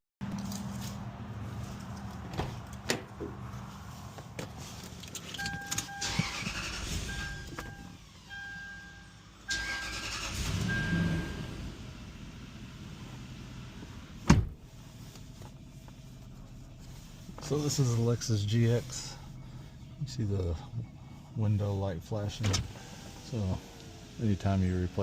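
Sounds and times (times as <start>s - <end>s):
clicks and handling noise: 4.1s - 6.2s
electronic warning chime beeping: 5.4s - 6.4s, 7.0s - 10.0s.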